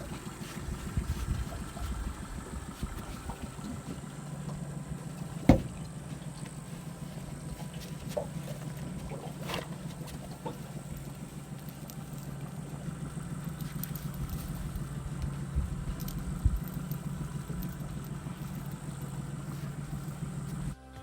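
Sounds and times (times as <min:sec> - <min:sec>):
engine idling: 0:00.0 - 0:20.8
short knocks: 0:02.8 - 0:06.6.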